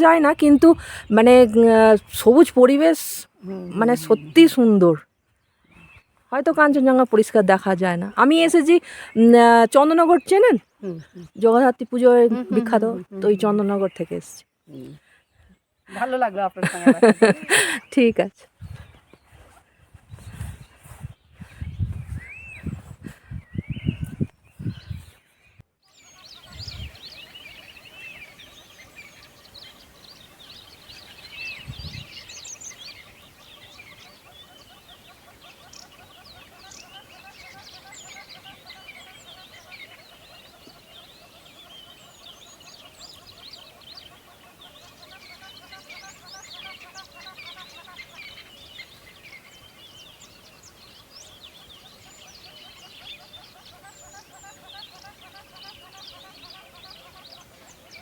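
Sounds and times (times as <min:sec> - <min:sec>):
small birds chirping and twittering: 0:00.0 - 0:58.0.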